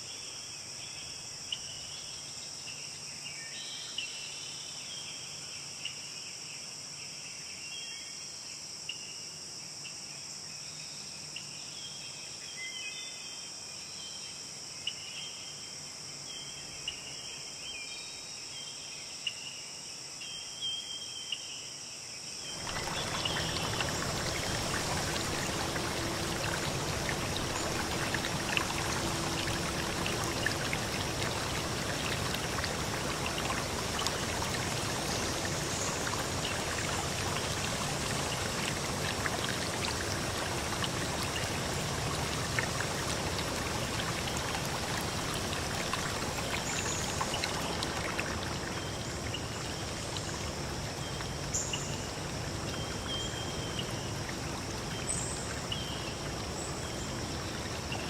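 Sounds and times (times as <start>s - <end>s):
insect chorus: 0.0s - 58.0s
flowing stream rushing: 22.6s - 58.0s.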